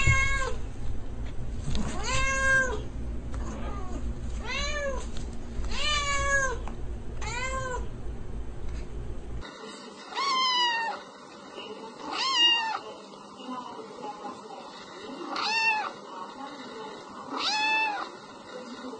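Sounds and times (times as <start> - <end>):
cat meowing: 0.0 - 0.6, 1.9 - 2.8, 3.5 - 5.0, 5.7 - 6.6, 7.2 - 7.8, 10.1 - 11.0, 12.1 - 12.8, 15.3 - 15.9, 17.3 - 18.1
steady low hum: 0.0 - 9.6.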